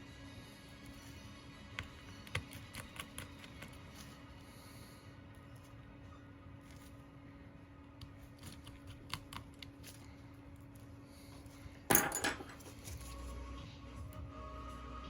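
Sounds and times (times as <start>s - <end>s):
metal parts clattering: 11.9s - 12.9s.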